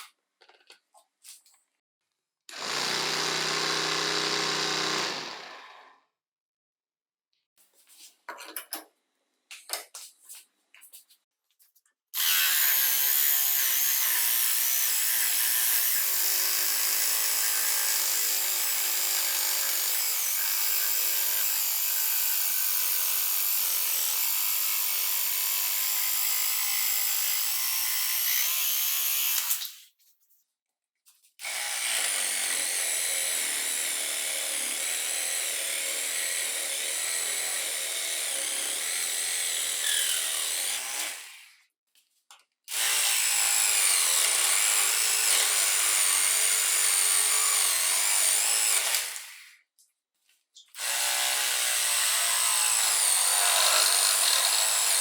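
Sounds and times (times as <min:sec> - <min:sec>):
reciprocating saw cutting wood: 0:02.5 - 0:05.9.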